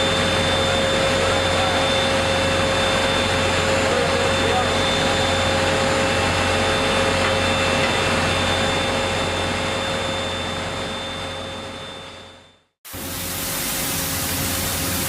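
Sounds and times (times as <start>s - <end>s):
steady whining tones: 0.0s - 12.6s
machine hiss: 12.9s - 15.0s.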